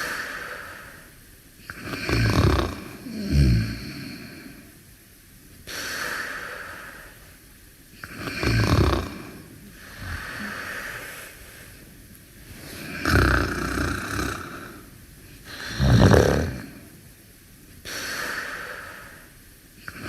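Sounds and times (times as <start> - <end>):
hissy breath out: 0.0 - 1.8, 9.6 - 13.5, 17.8 - 20.0
loud rattling snores: 1.7 - 4.1, 8.0 - 10.5, 12.8 - 14.9, 15.5 - 16.9.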